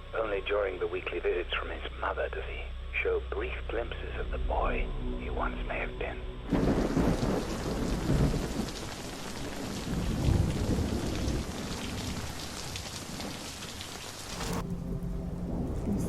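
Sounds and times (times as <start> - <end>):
heavy rain falling: 6.5 - 16.0
low thunder rolling: 6.5 - 16.0.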